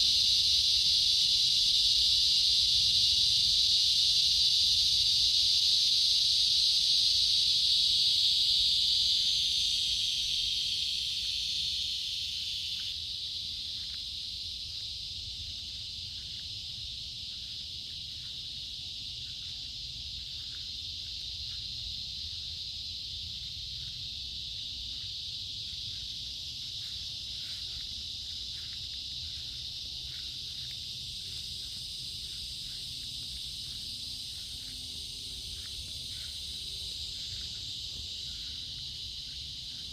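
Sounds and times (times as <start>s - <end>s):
insects chirring: 0.0s - 39.9s.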